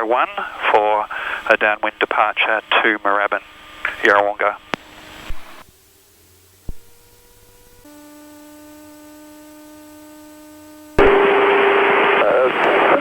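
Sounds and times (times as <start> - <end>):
fixed radio tones: 0.0 - 5.7, 11.0 - 13.0
radio static burst: 0.0 - 5.8, 6.5 - 8.8, 10.9 - 13.0
electrical hum: 0.0 - 13.0.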